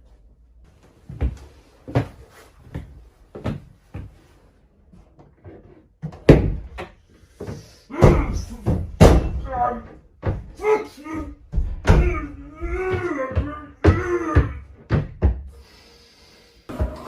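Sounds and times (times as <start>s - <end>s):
footsteps on hard floor: 0.8s - 4.4s.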